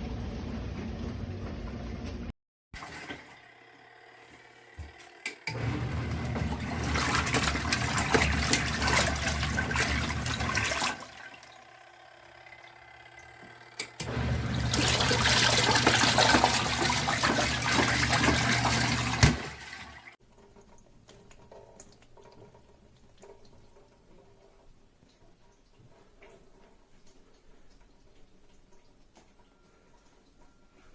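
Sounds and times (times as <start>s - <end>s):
washing machine churning water: 0.0s - 3.5s, 4.8s - 30.7s.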